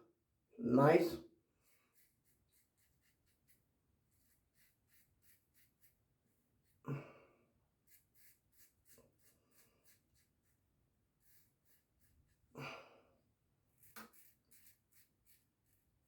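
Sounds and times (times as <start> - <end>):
razor scraping stubble: 1.6 - 6.0, 7.8 - 10.6, 11.2 - 12.5, 13.8 - 15.8.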